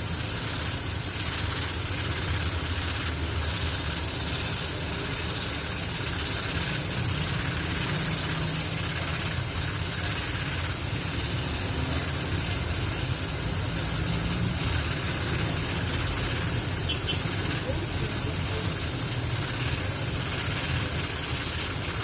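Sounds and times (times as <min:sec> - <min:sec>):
constant hiss: 0:00.0 - 0:22.0
low engine rumble: 0:03.4 - 0:22.0.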